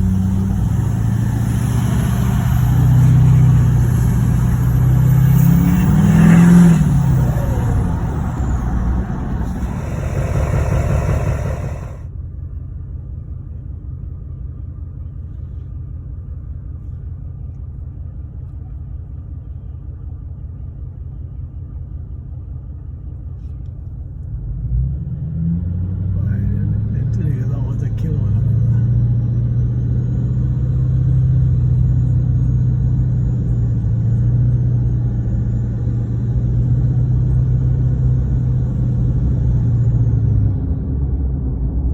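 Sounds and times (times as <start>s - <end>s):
diesel truck engine running: 0.0s - 12.1s
low muffled exhaust drone: 0.0s - 12.1s.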